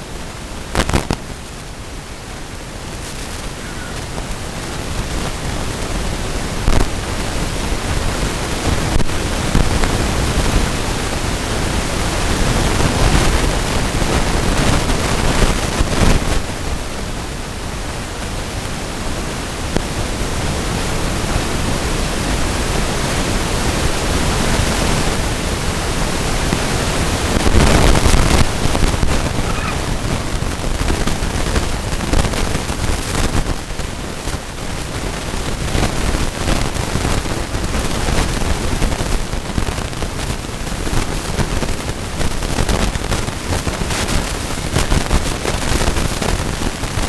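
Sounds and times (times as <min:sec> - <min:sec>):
loud rushing noise: 0:27.4 - 0:32.2.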